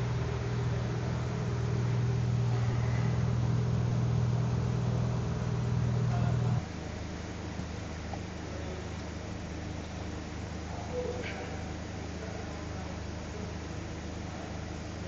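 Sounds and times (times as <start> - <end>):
motorcycle engine idling: 0.0 - 6.7.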